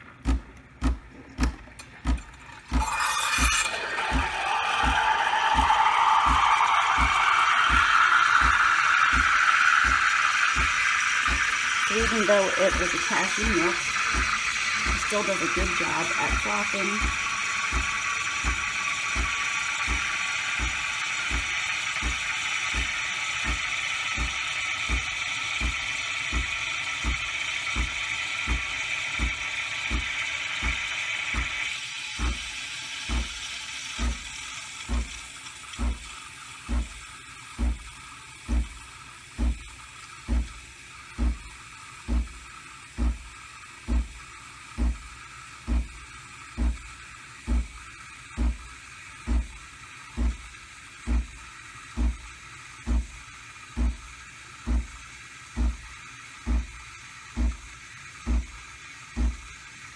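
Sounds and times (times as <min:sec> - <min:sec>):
steam wand hissing: 0:02.8 - 0:36.1
machine low pulsing thump: 0:04.1 - 0:31.6, 0:32.2 - 0:32.5, 0:33.1 - 0:33.4, 0:34.0 - 0:34.3, 0:34.9 - 0:35.2, 0:35.8 - 0:36.1, 0:36.7 - 0:37.0, 0:37.6 - 0:37.9, 0:38.5 - 0:38.8, 0:39.4 - 0:39.6, 0:40.3 - 0:40.6, 0:41.2 - 0:41.4, 0:42.1 - 0:42.4, 0:43.0 - 0:43.2, 0:43.9 - 0:44.2, 0:44.8 - 0:45.0, 0:45.7 - 0:46.0, 0:46.6 - 0:46.8, 0:47.5 - 0:47.8, 0:48.4 - 0:48.6, 0:49.3 - 0:49.5, 0:50.2 - 0:50.4, 0:51.1 - 0:51.3, 0:52.0 - 0:52.2, 0:52.8 - 0:53.2, 0:55.6 - 0:55.9, 0:56.5 - 0:56.8, 0:57.4 - 0:57.6, 0:58.3 - 0:58.5, 0:59.2 - 0:59.5.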